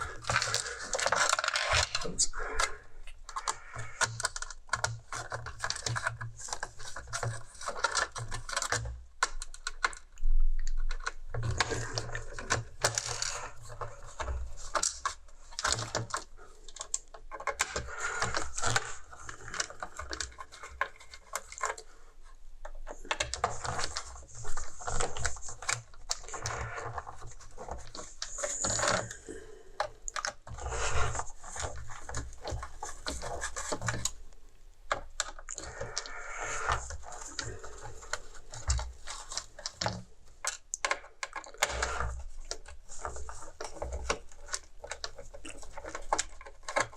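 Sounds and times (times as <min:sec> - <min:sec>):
plastic parts being handled: 0:00.0 - 0:46.9.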